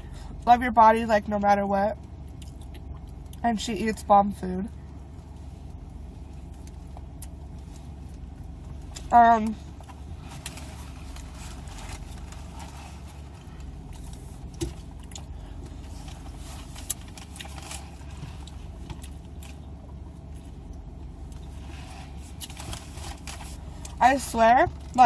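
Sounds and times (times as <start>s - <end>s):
chewing and mouth noises: 2.3s - 3.4s, 9.8s - 19.7s.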